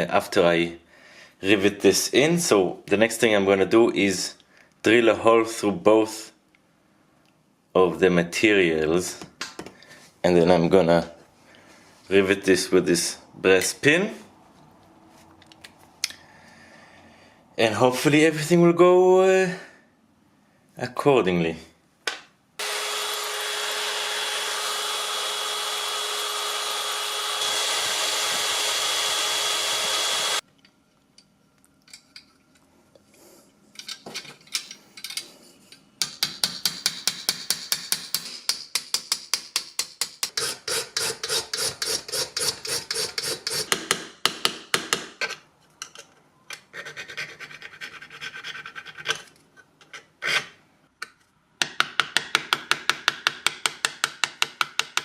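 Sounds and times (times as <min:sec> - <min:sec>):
drill boring through metal: 0:22.6 - 0:30.4
hand tool scraping metal: 0:40.2 - 0:43.8.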